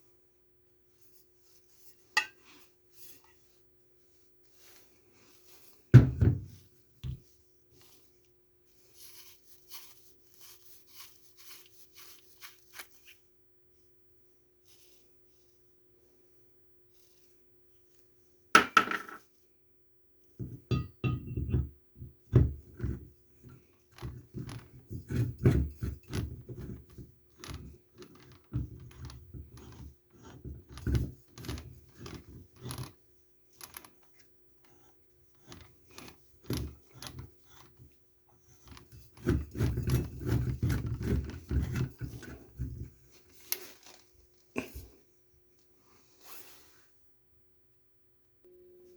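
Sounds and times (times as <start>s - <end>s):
faint steady hum: 46.9s - 48.9s.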